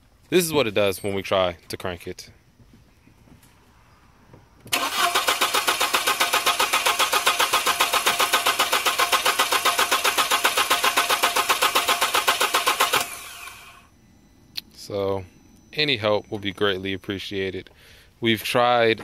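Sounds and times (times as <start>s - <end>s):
car engine cranking: 4.7s - 13.8s.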